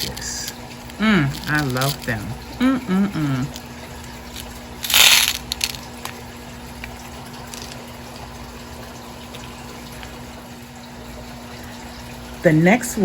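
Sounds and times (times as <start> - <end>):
low hum: 0.0 - 10.3
beads and packaging rustling: 1.2 - 2.3, 4.3 - 6.2, 7.5 - 7.8.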